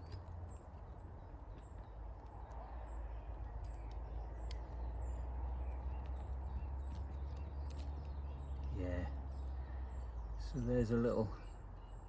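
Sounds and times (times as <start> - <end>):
small clicks: 0.0 - 8.8
songbird chirps: 0.0 - 12.0.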